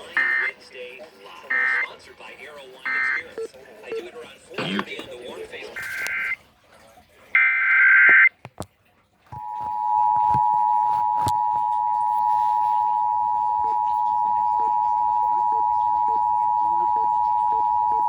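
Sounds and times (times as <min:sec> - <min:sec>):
two-tone attention signal: 0:00.0 - 0:00.5, 0:01.5 - 0:01.9, 0:02.9 - 0:03.5, 0:05.8 - 0:06.4, 0:07.4 - 0:08.3, 0:09.4 - 0:18.0
digital data tones: 0:00.0 - 0:00.6, 0:01.5 - 0:01.9, 0:02.9 - 0:03.5, 0:05.8 - 0:06.4, 0:07.4 - 0:08.3, 0:09.4 - 0:18.0.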